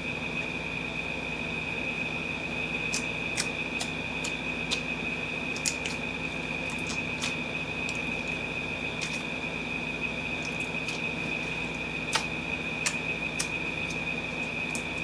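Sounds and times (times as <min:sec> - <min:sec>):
slime clicking and popping: 0:05.5 - 0:06.0, 0:11.7 - 0:15.0.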